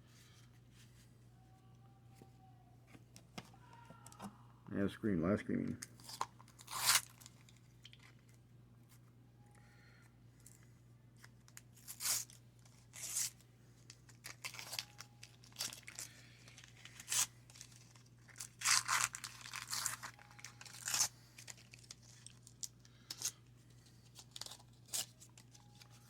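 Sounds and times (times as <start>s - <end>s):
wax paper wrapper tearing: 6.0s - 8.0s, 11.5s - 23.4s, 24.1s - 26.0s.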